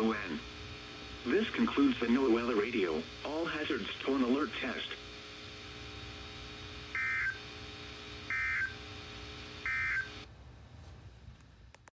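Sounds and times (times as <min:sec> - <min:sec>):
receiver low hum: 0:00.0 - 0:11.9
high data tone bursts: 0:06.9 - 0:07.5, 0:08.2 - 0:08.8, 0:09.6 - 0:10.3.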